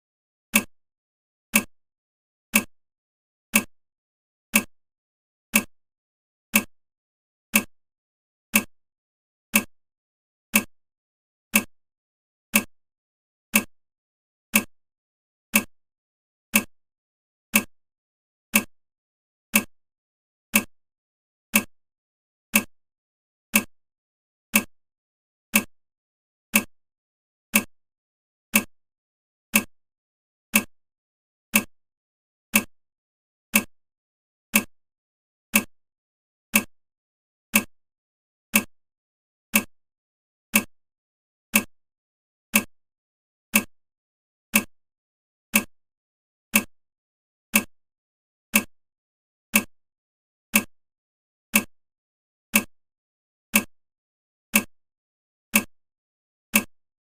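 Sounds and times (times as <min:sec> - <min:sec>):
timer ticking: 0:00.5 - 0:00.7, 0:01.5 - 0:01.7, 0:02.5 - 0:02.7, 0:03.5 - 0:03.7, 0:04.5 - 0:04.7, 0:05.5 - 0:05.7, 0:06.5 - 0:06.7, 0:07.5 - 0:07.7, 0:08.5 - 0:08.7, 0:09.5 - 0:09.7, 0:10.5 - 0:10.7, 0:11.5 - 0:11.7, 0:12.5 - 0:12.7, 0:13.5 - 0:13.7, 0:14.5 - 0:14.7, 0:15.5 - 0:15.7, 0:16.5 - 0:16.7, 0:17.5 - 0:17.7, 0:18.5 - 0:18.7, 0:19.5 - 0:19.7, 0:20.5 - 0:20.7, 0:21.5 - 0:21.7, 0:22.5 - 0:22.7, 0:23.5 - 0:23.7, 0:24.5 - 0:24.7, 0:25.5 - 0:25.7, 0:26.5 - 0:26.7, 0:27.5 - 0:27.7, 0:28.5 - 0:28.7, 0:29.5 - 0:29.7, 0:30.5 - 0:30.7, 0:31.5 - 0:31.7, 0:32.5 - 0:32.7, 0:33.5 - 0:33.7, 0:34.5 - 0:34.7, 0:35.5 - 0:35.7, 0:36.5 - 0:36.7, 0:37.5 - 0:37.7, 0:38.5 - 0:38.7, 0:39.5 - 0:39.7, 0:40.5 - 0:40.7, 0:41.5 - 0:41.7, 0:42.5 - 0:42.7, 0:43.5 - 0:43.7, 0:44.5 - 0:44.7, 0:45.5 - 0:45.7, 0:46.5 - 0:46.7, 0:47.5 - 0:47.7, 0:48.5 - 0:48.7, 0:53.5 - 0:53.7, 0:54.5 - 0:54.7, 0:56.5 - 0:56.7.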